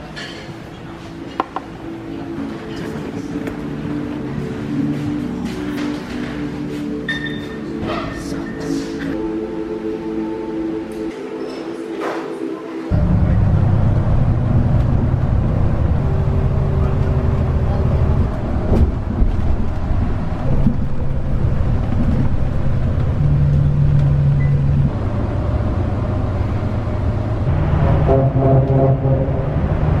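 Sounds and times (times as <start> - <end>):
vehicle engine rumble: 12.9 - 30.0.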